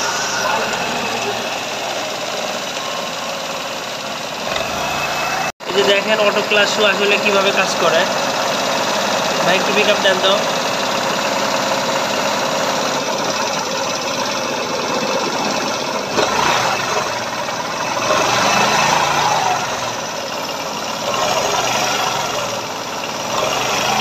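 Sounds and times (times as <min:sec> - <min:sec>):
scooter engine revving: 0:00.0 - 0:24.0.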